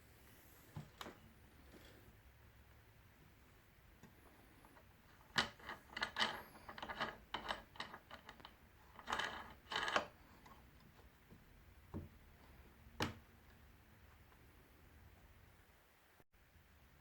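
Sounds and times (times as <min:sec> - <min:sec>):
clicks and knocks of parts handled: 0:04.8 - 0:11.1.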